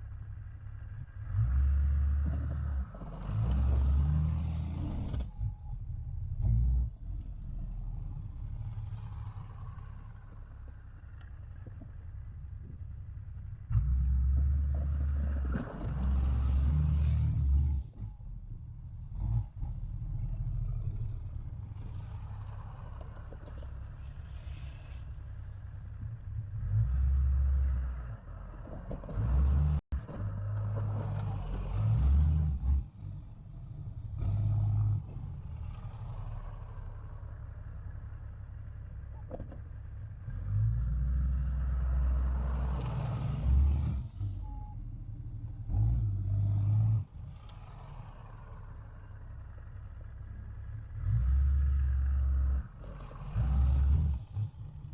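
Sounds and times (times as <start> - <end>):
truck engine revving: 0.8 - 5.5, 19.1 - 38.4, 40.3 - 44.6, 45.2 - 54.9.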